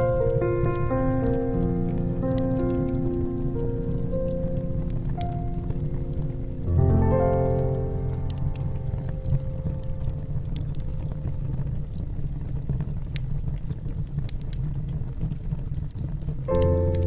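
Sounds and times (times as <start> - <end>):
music: 0.0 - 12.2, 16.5 - 17.0
low steady rumble: 0.0 - 13.2
wood fire crackling: 0.0 - 17.0.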